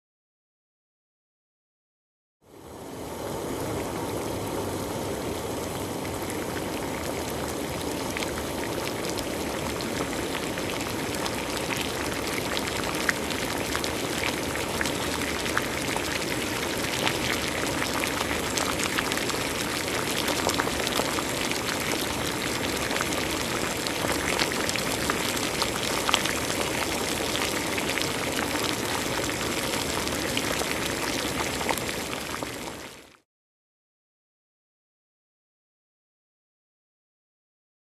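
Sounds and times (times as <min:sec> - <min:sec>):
water bubbling at a rolling boil: 0:02.5 - 0:33.2.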